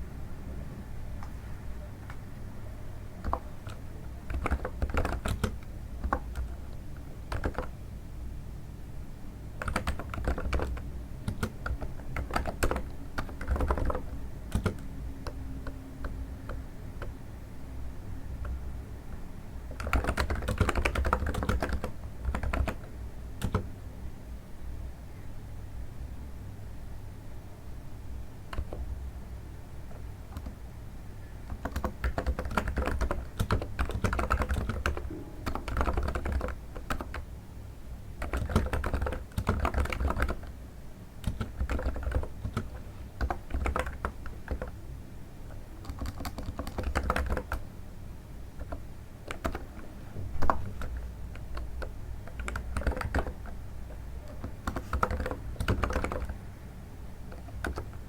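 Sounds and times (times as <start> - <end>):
soft keyboard typing: 1.2 - 2.4, 3.0 - 7.8, 9.6 - 17.2, 18.3 - 23.7, 28.4 - 29.0, 29.8 - 30.6, 31.2 - 37.3, 38.2 - 40.6, 41.2 - 44.8, 45.4 - 47.7, 48.5 - 56.5, 57.2 - 58.0.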